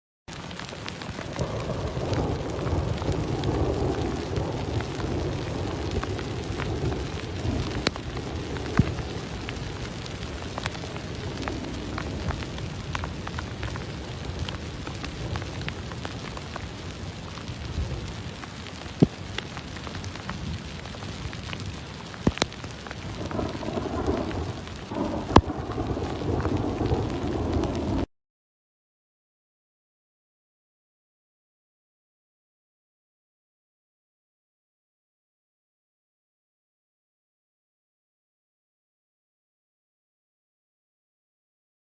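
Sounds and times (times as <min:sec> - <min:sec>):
rain falling: 0:00.3 - 0:28.1.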